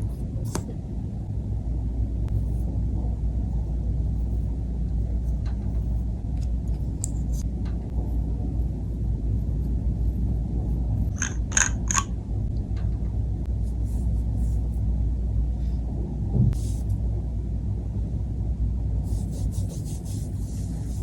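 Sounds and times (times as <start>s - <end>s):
steady low rumble: 0.0s - 21.0s.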